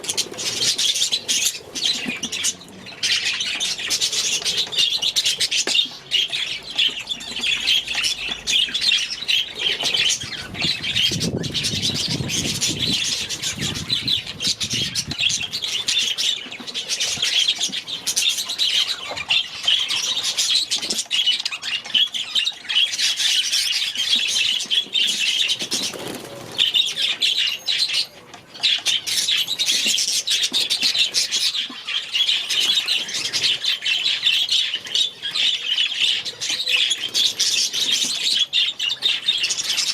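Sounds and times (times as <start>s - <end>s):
budgerigars chattering and chirping: 0.0s - 39.9s
wings flapping: 25.4s - 26.8s.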